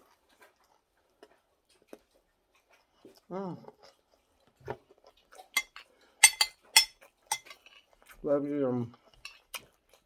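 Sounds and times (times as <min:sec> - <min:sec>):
cutlery clinking on a plate: 0:05.6 - 0:07.7.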